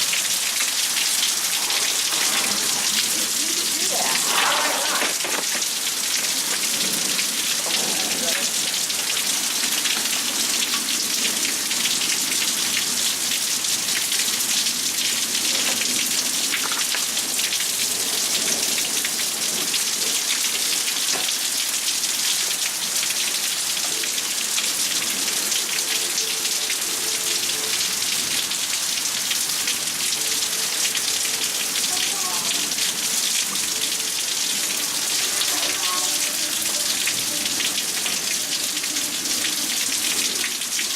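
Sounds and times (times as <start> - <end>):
heavy rain falling: 0.0 - 40.9.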